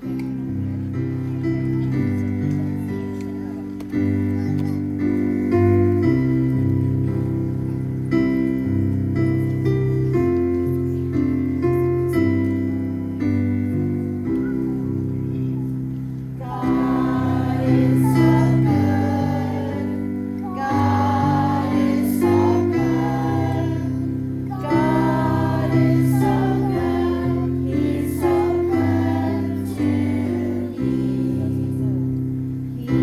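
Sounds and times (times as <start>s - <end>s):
sustained keyboard chords: 0.0s - 33.0s
voices singing a hymn: 16.4s - 33.0s.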